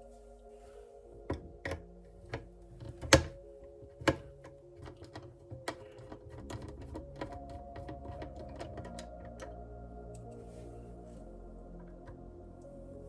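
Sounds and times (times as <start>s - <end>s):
soft background music: 0.0s - 13.0s
computer parts clicking: 1.3s - 9.6s.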